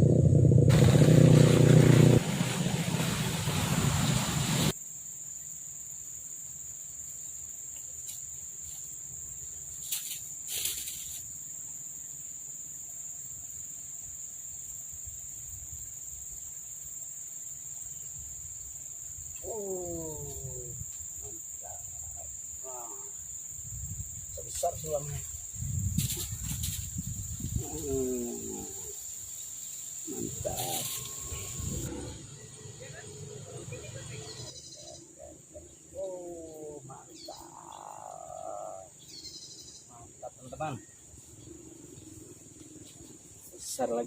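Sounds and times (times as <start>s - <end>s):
motorcycle engine running: 0.0s - 4.7s
crickets droning: 0.0s - 44.0s.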